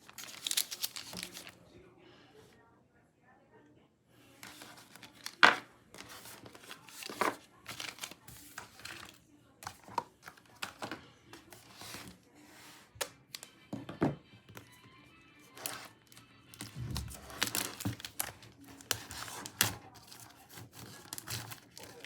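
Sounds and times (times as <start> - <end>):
packaging tearing and crinkling: 0.0 - 1.6, 4.5 - 9.1, 15.6 - 22.0.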